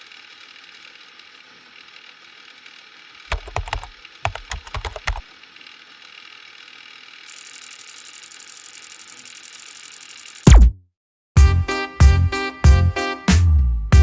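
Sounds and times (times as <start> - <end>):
sharp clicks and knocks: 3.3 - 5.2.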